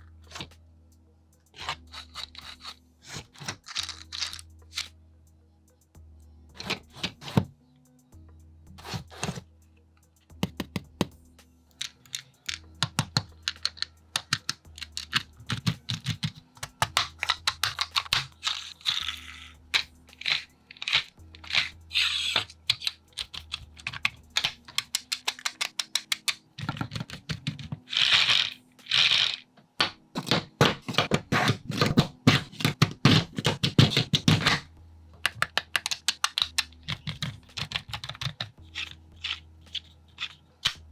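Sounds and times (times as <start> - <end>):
small plastic parts clicking: 1.6 - 4.9, 11.8 - 40.9.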